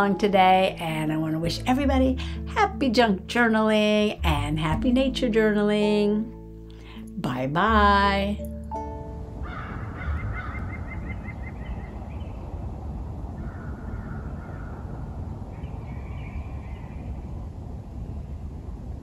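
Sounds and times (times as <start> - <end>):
steady low rumble: 7.5 - 19.0
wild birds calling: 9.4 - 17.3.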